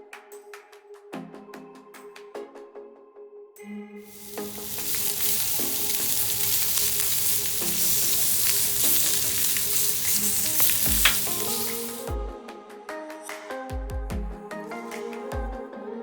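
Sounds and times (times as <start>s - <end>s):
food sizzling in a frying pan: 4.1s - 12.1s.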